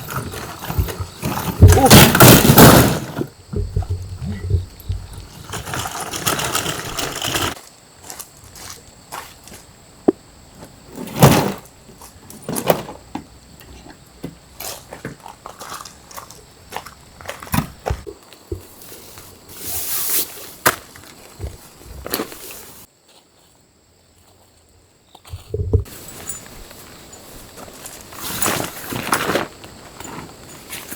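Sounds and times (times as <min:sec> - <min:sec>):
objects knocking and clicking: 0:00.0 - 0:07.6.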